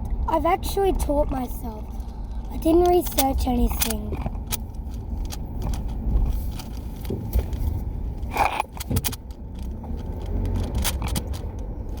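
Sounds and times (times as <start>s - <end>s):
low steady rumble: 0.0s - 12.0s
puzzle cube clicking and rattling: 2.8s - 6.9s, 8.2s - 12.0s
puzzle cube scrape: 8.2s - 8.8s.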